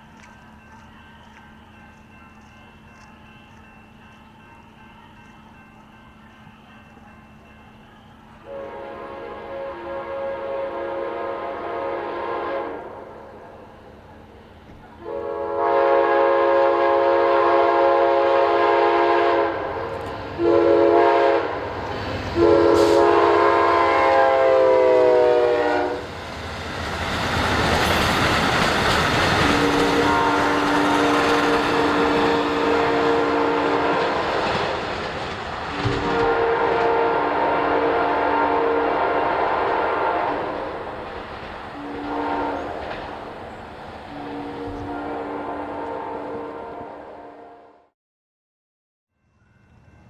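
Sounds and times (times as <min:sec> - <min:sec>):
train rushing past: 0:07.4 - 0:47.2
train horn blasts: 0:08.4 - 0:13.4, 0:15.0 - 0:26.1, 0:29.4 - 0:34.6, 0:35.7 - 0:40.8, 0:41.8 - 0:42.8, 0:44.1 - 0:47.9.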